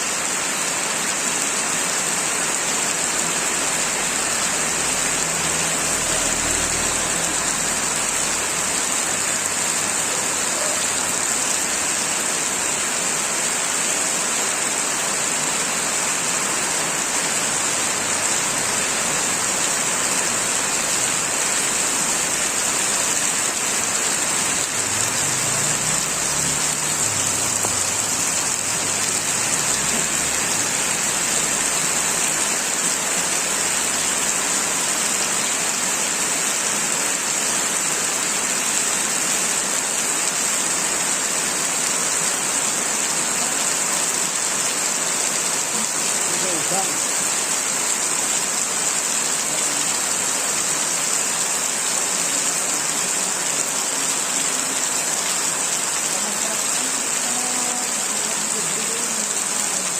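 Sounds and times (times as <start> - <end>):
heavy rain pattering: 0.0 - 59.9.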